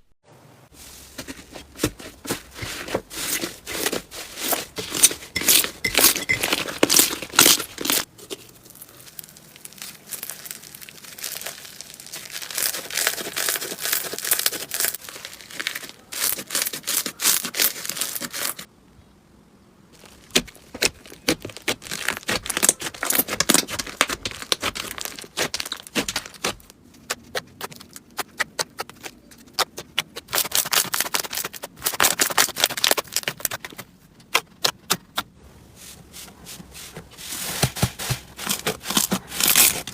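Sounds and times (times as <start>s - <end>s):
slime crackling and popping: 5.4s - 18.7s, 20.0s - 35.2s, 37.8s - 39.9s.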